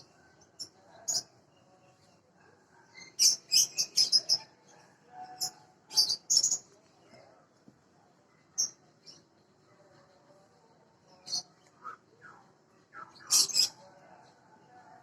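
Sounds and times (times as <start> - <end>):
small birds chirping: 0.0 - 4.6, 5.4 - 7.4, 11.1 - 14.5.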